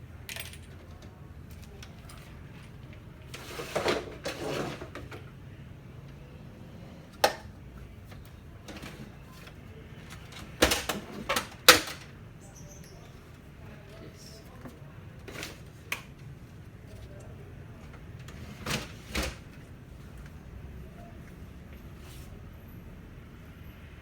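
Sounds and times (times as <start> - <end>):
plastic parts scraping rattle: 0.3 - 5.4, 7.0 - 12.1, 15.2 - 15.9, 17.8 - 19.7
plastic parts knocking: 8.1 - 12.1.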